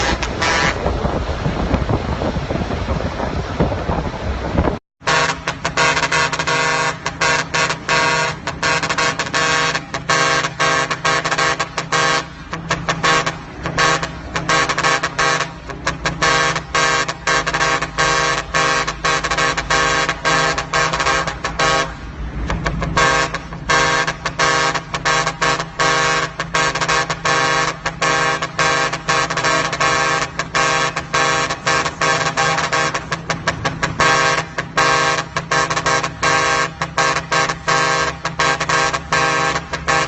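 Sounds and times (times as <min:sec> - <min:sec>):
truck horn blasts: 0:00.0 - 0:01.0, 0:05.0 - 0:40.0.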